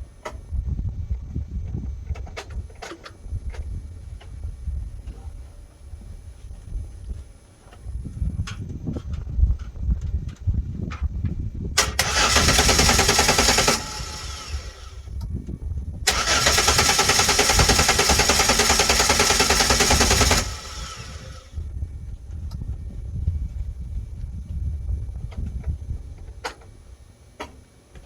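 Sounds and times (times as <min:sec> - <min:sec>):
car engine cranking on starter: 0:11.8 - 0:15.1, 0:16.1 - 0:21.6.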